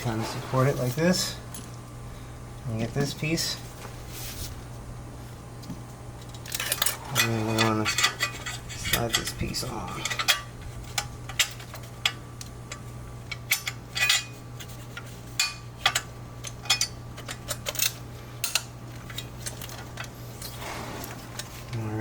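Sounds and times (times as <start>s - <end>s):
steady low hum: 0.0s - 22.0s
metal tools clinking: 6.2s - 12.2s, 13.3s - 14.4s.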